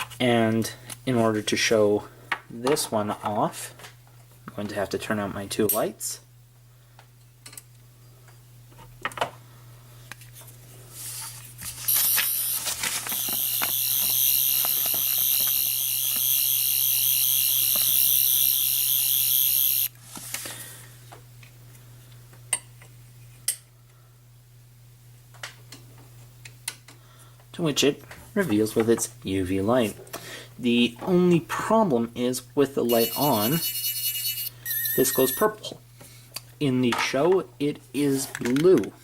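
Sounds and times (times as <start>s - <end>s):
toy high warbling buzz: 11.9s - 19.9s, 32.9s - 35.5s.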